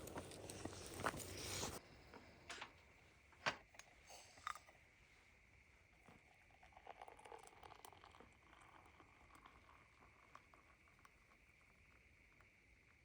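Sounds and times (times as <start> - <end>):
faint clicks and rustles: 0.0 - 2.8.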